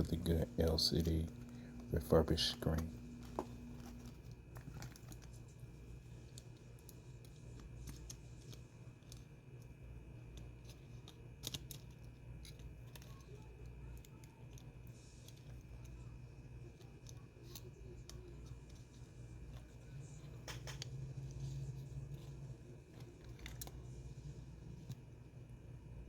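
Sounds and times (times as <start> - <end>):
low steady hum: 0.0 - 26.0
small tools clicking and tapping: 10.3 - 15.9.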